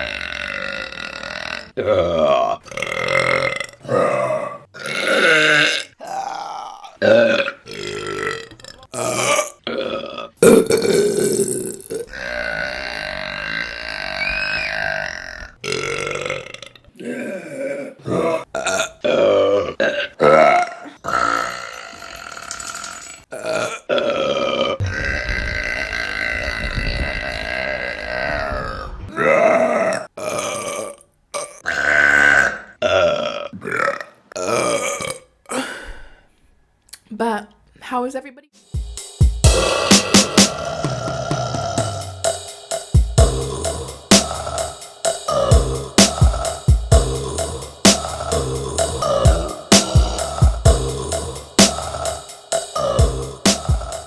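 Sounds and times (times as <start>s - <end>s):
woman burping: 0.6s - 14.0s.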